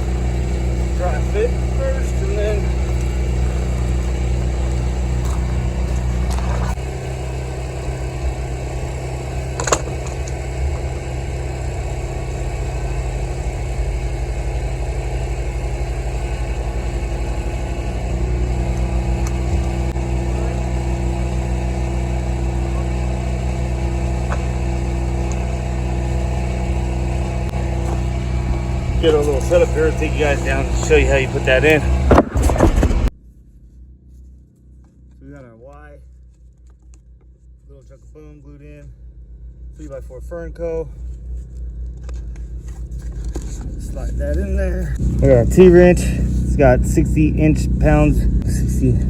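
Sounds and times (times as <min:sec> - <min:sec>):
excavator diesel engine running: 0:00.0 - 0:37.3, 0:38.1 - 0:49.0.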